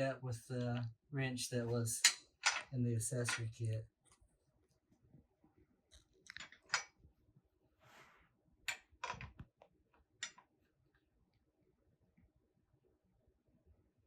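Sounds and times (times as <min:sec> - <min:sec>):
short rustle: 0:07.8 - 0:08.3.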